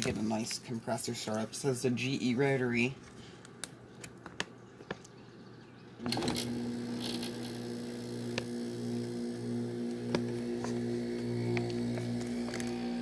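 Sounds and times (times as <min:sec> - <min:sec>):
compressor starting and humming: 0:06.0 - 0:13.0
air conditioner fan humming: 0:06.1 - 0:13.0.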